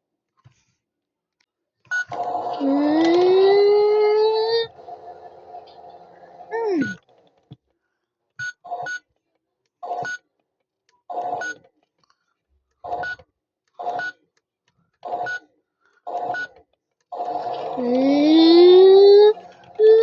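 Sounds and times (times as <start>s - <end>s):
toy electronic beeps: 1.9s - 4.7s, 17.3s - 20.0s.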